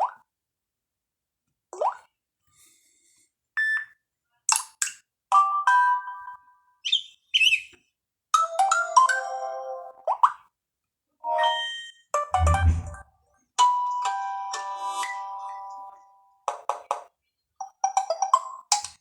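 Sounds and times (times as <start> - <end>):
quick rising electronic blip: 12.4 - 13.0.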